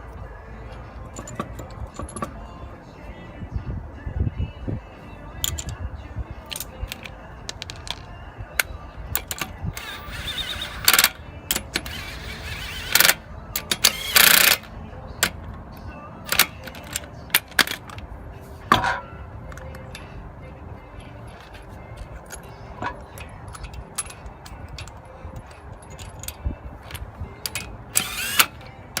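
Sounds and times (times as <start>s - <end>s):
lug nuts clinking: 0.7s - 2.5s, 6.4s - 18.0s, 20.8s - 29.0s.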